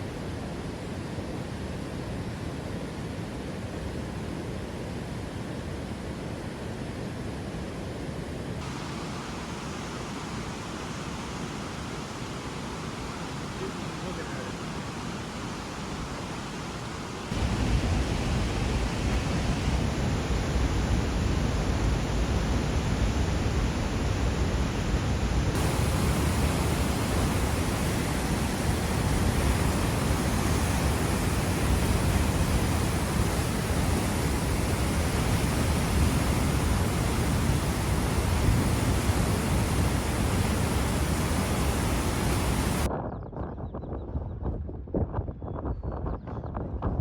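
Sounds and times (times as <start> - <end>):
dull background noise: 8.6 - 42.9
loud steady rushing noise: 8.6 - 42.9.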